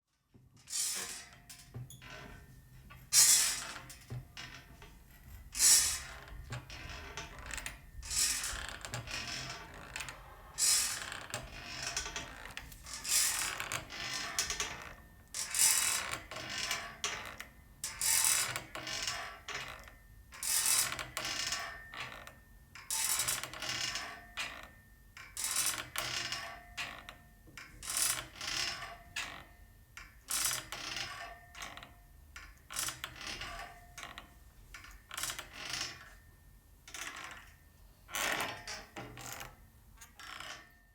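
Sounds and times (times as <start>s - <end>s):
swing creaking and rattling: 0.9s - 17.3s.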